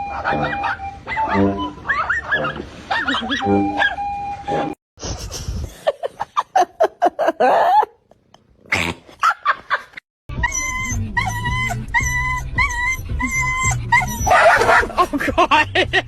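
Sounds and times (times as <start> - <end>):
high yelping cries: 0.0 - 4.1, 10.3 - 14.9.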